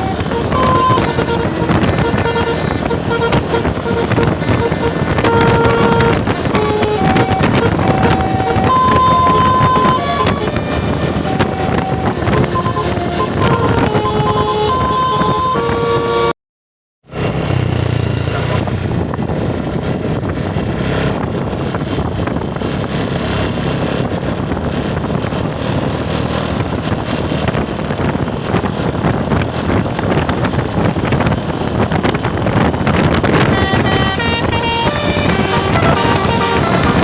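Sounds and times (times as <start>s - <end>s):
held pitched tones: 0.0s - 16.3s, 33.0s - 37.0s
traffic passing: 0.0s - 16.3s, 17.1s - 37.0s.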